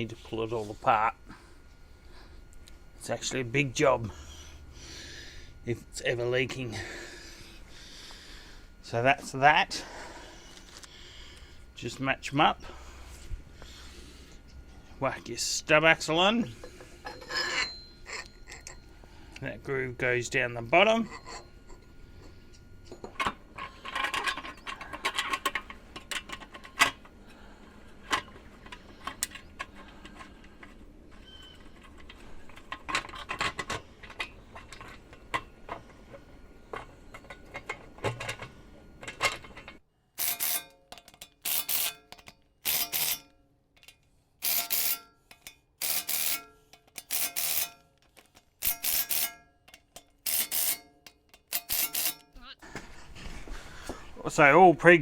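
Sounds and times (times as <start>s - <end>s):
metal parts clicking and knocking: 22.9s - 27.1s, 28.1s - 35.9s, 36.7s - 52.4s.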